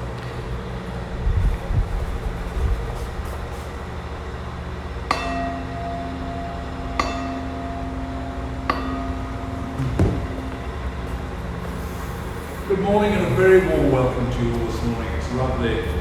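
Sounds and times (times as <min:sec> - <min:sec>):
low background rumble: 0:00.0 - 0:16.0
bell ringing: 0:05.1 - 0:11.7.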